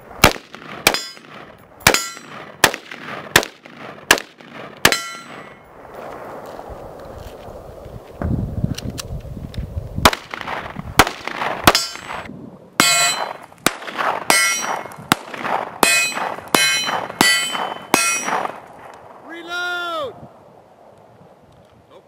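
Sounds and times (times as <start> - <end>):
gunshots: 0.2 - 5.6, 10.0 - 18.9
steel target clanging: 0.9 - 2.4, 4.9 - 5.6, 11.7 - 13.4, 14.2 - 15.0, 15.8 - 18.6.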